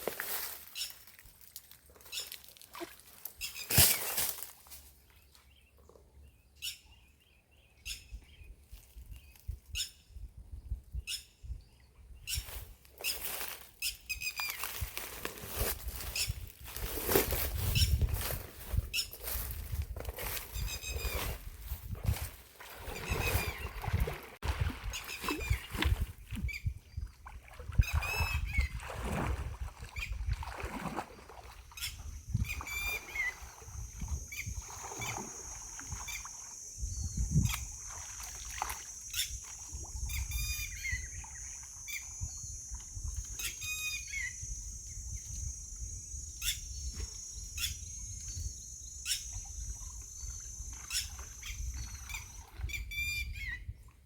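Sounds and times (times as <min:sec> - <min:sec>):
knocks and splashing in water: 0:22.1 - 0:26.5, 0:27.1 - 0:31.8.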